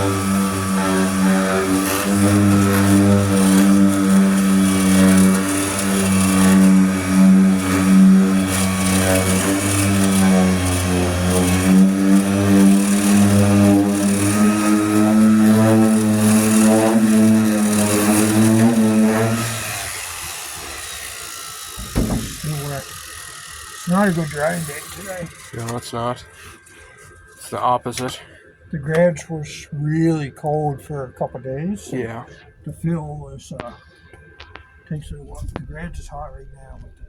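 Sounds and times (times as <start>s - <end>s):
power sander running: 0.0s - 27.4s.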